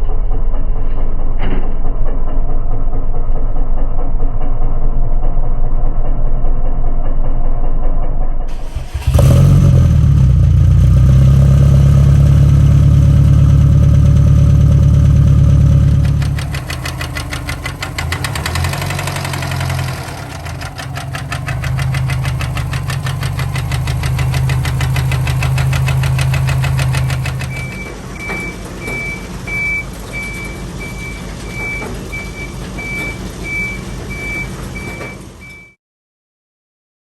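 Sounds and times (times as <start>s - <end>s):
car engine clattering: 8.5s - 35.8s
reversing beeper: 14.8s - 35.8s.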